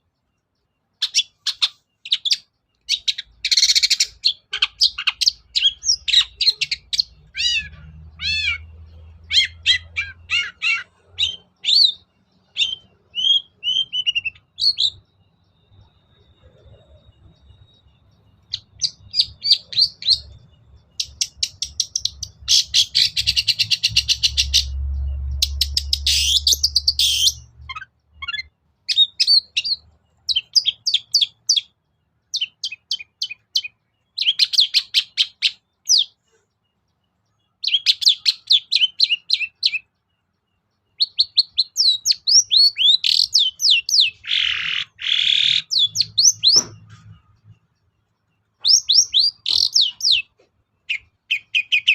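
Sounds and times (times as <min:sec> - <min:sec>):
bird singing rapid high chattering: 0:00.0 - 0:51.9
harsh rasping bird call: 0:03.0 - 0:14.8, 0:25.4 - 0:31.3, 0:42.1 - 0:47.3.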